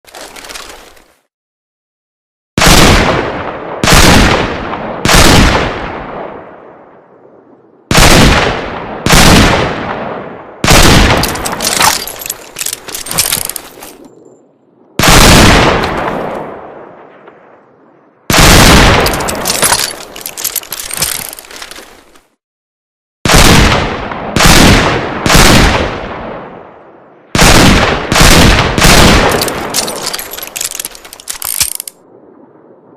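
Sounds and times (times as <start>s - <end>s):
revolver gunshots with echo: 7.9s - 12.6s, 15.0s - 17.4s, 18.3s - 20.2s, 27.4s - 30.1s.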